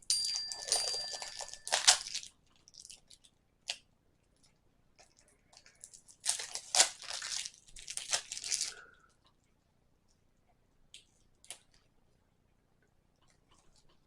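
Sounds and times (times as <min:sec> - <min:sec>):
packaging torn and crinkled: 0:01.7 - 0:03.8, 0:05.8 - 0:08.8.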